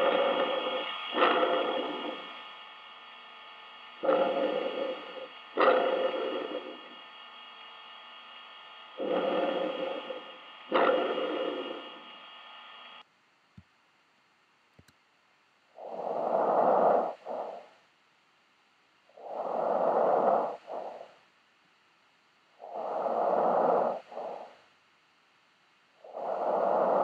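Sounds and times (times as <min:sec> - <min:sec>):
rushing breath sounds: 0:00.0 - 0:02.4, 0:04.0 - 0:07.0, 0:09.0 - 0:12.1, 0:15.8 - 0:17.8, 0:19.1 - 0:21.2, 0:22.6 - 0:24.7, 0:26.0 - 0:27.0.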